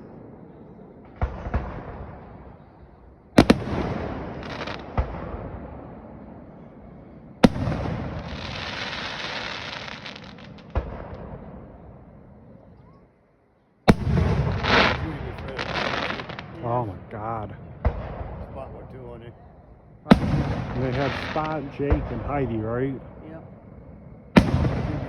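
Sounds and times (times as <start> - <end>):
fireworks bursting with bangs: 0.0 - 2.7, 3.4 - 6.4, 7.4 - 12.0, 13.9 - 19.2, 20.1 - 23.3, 24.3 - 25.0
fireworks crackling: 3.4 - 5.5, 7.4 - 11.8, 13.9 - 19.3, 20.1 - 23.5, 24.3 - 25.0.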